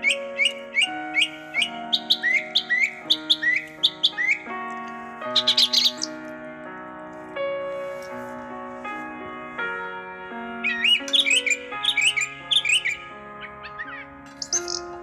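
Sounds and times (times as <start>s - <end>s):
bird chirping: 0.0s - 6.3s, 10.6s - 15.0s
slow keyboard chords: 0.0s - 15.0s.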